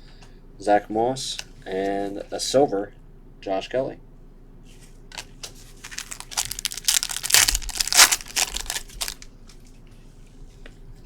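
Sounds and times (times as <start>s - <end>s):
wrapper tearing and crinkling: 5.8s - 9.2s.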